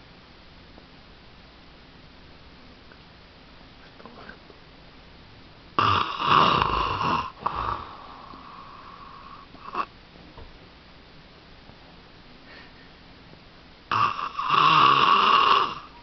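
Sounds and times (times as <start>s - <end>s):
loud rasping snore: 5.8s - 9.9s, 13.9s - 16.0s.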